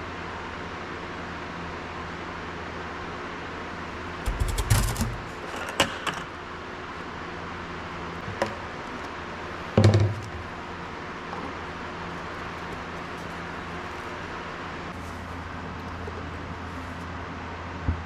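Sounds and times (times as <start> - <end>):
metal knocks and clatter: 4.2 - 6.3.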